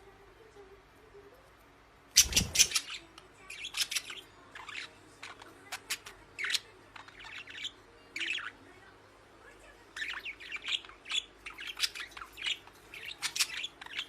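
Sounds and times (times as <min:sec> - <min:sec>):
parrot squawking and chirping: 0:02.1 - 0:08.6, 0:09.9 - 0:14.0.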